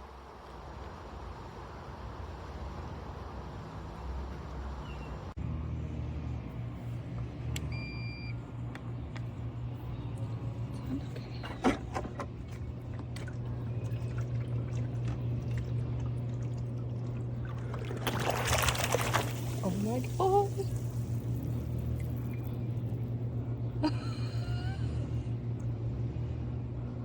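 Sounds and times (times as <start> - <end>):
pool cleaner pump motor humming: 5.4 - 27.0
watery sounds: 10.6 - 23.4.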